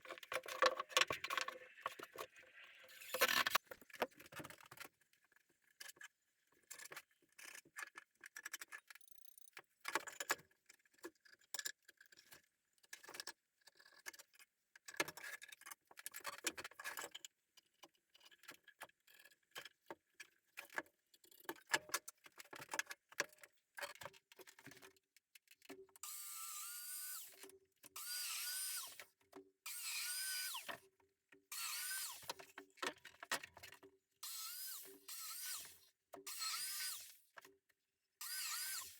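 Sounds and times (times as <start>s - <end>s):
power drill bursts: 26.0s - 27.4s, 28.0s - 29.0s, 29.7s - 30.8s, 31.5s - 32.3s, 34.2s - 37.2s, 38.2s - 38.9s.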